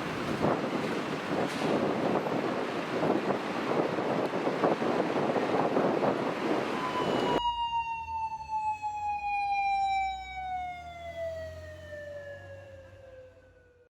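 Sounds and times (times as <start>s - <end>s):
wind buffeting microphone: 0.0s - 7.4s
police motorcycle siren wailing: 6.2s - 13.9s.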